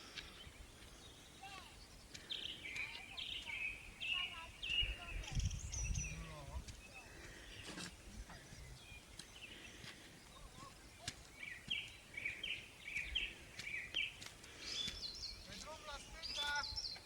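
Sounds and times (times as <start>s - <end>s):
small bird chirping: 0.3s - 17.0s.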